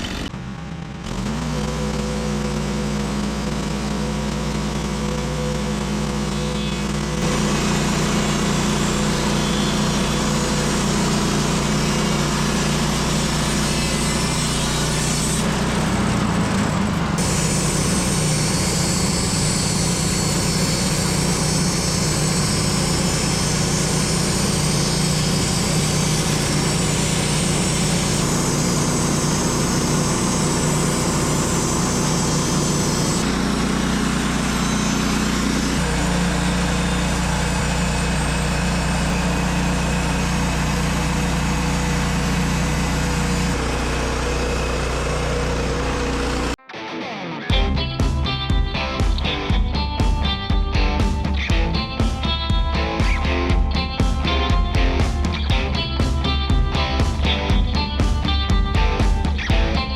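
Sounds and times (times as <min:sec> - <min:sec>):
small gas engine running: 0:00.0 - 0:46.6, 0:47.5 - 0:59.9
bandsaw blade sawing log: 0:01.1 - 0:46.6.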